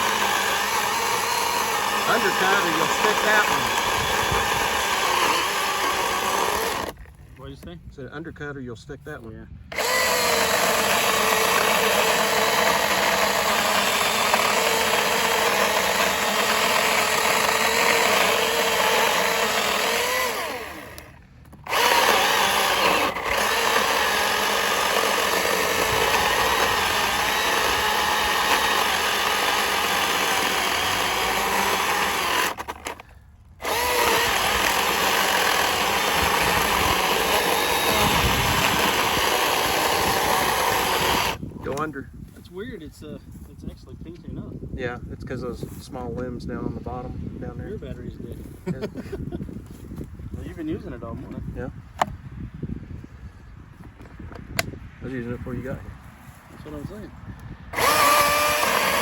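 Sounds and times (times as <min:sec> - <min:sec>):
battery chainsaw cutting log: 0:00.0 - 0:07.1, 0:09.7 - 0:41.9, 0:57.7 - 0:59.0.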